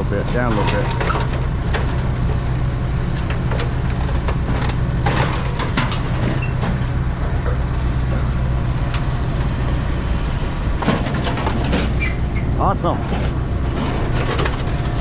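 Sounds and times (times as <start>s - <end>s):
large engine running: 0.0s - 15.0s
metal clanks and clicks: 0.3s - 2.0s.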